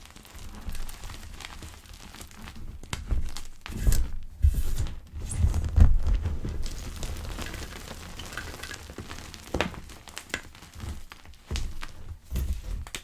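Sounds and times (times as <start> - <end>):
pebbles crunching: 0.0 - 3.8, 5.8 - 13.0
low pressing thuds: 3.0 - 7.0.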